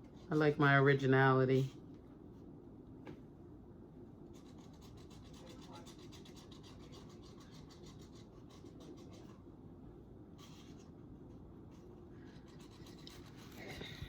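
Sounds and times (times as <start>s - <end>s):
coloring strokes scratching: 4.3s - 9.4s, 11.8s - 14.0s.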